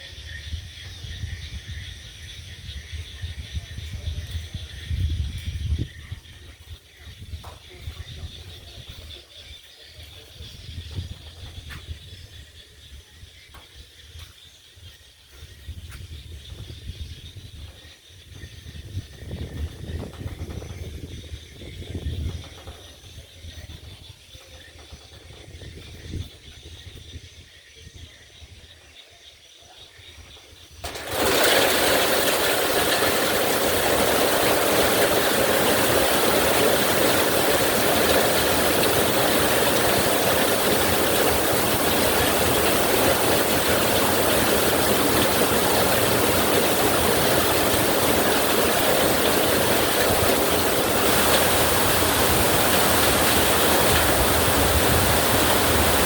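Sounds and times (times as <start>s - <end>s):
distant thunder rumbling: 30.8s - 56.0s
heavy rain: 30.8s - 56.0s.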